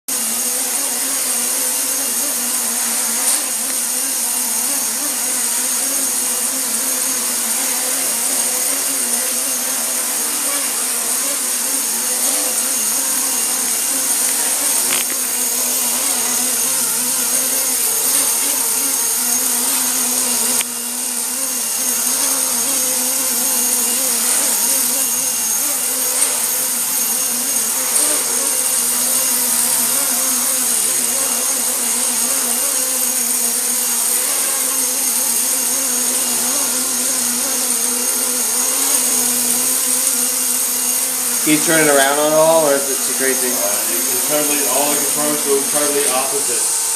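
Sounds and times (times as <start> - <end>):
remote-control helicopter whirring: 0.1 - 46.9.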